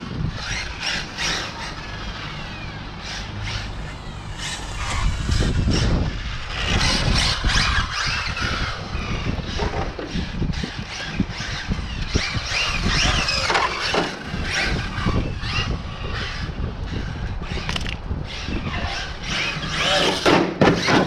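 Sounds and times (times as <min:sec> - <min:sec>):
vehicle low rumble: 0:00.0 - 0:20.2.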